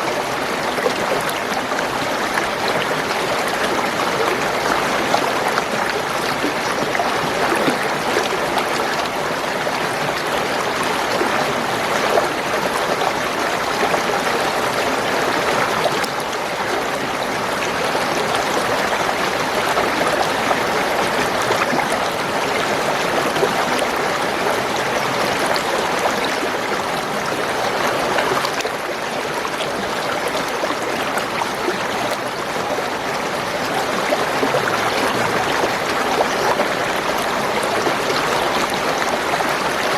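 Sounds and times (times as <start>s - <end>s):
water gurgling over stones: 0.0s - 39.9s.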